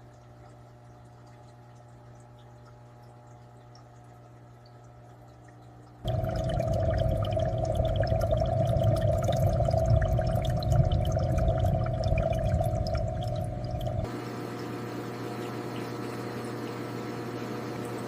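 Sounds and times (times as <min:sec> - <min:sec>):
faint low hum: 0:00.0 - 0:14.1
water trickling: 0:00.0 - 0:16.8
aquarium water bubbling: 0:00.0 - 0:18.0.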